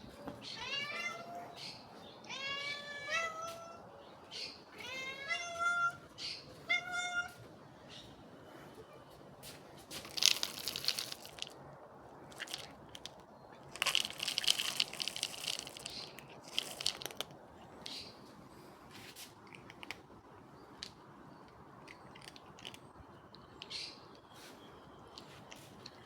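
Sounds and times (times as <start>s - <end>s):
crisp crunching: 10.0s - 11.6s, 12.3s - 17.3s.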